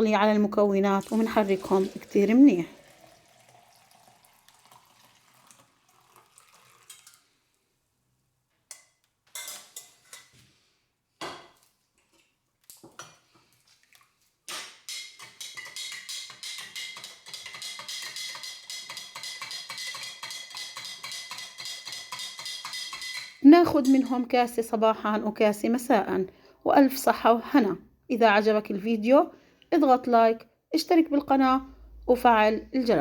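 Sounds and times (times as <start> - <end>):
spoon clinking against container: 14.5 - 24.2.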